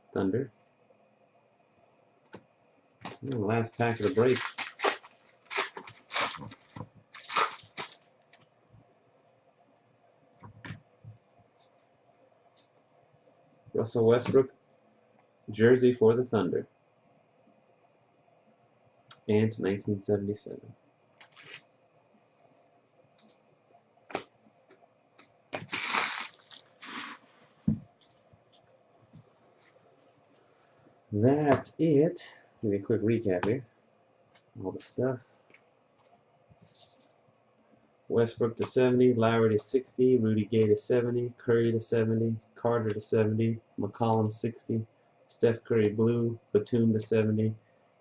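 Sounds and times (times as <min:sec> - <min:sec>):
cards clicking and rustling: 0:03.0 - 0:08.0
foil wrapper ripping and crinkling: 0:03.2 - 0:08.0, 0:25.6 - 0:27.2
rustling scrape: 0:25.6 - 0:27.6.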